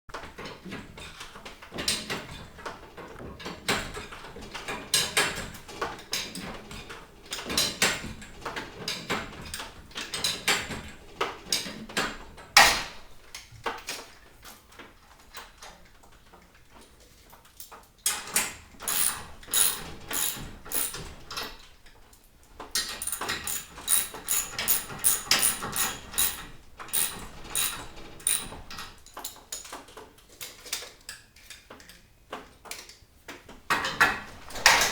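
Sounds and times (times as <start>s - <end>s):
metal spring clicking and clanking: 18.8s - 21.4s, 22.8s - 29.0s.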